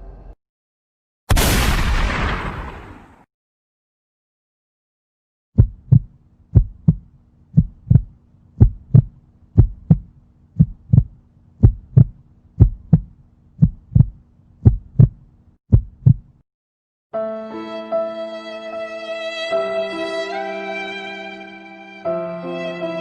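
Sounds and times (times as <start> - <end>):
heartbeat thumps: 5.6 - 16.4
sustained string music: 17.2 - 23.0.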